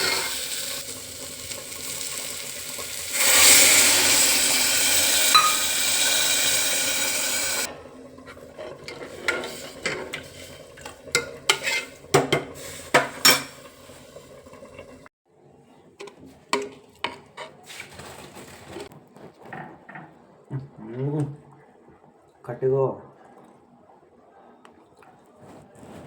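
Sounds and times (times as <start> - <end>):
food sizzling in a hot pan: 0.0 - 7.7, 8.8 - 14.5
metal spoon stirring in a pot: 0.0 - 15.0, 16.0 - 17.6.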